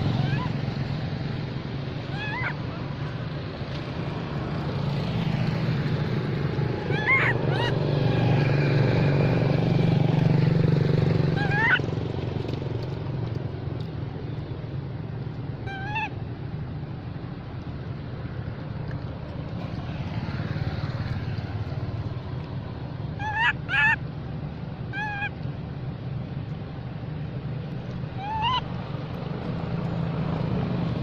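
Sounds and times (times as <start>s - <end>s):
baby monkey crying: 0.0s - 0.6s, 2.1s - 2.9s, 6.8s - 7.8s, 11.3s - 11.9s, 15.6s - 16.1s, 23.2s - 24.0s, 24.9s - 25.4s, 28.1s - 28.7s.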